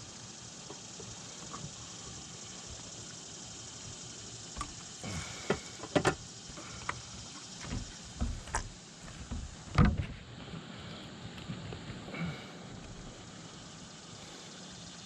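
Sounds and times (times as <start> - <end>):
steady high hiss: 0.0 - 15.0
handling knocks on a kayak: 7.6 - 10.2.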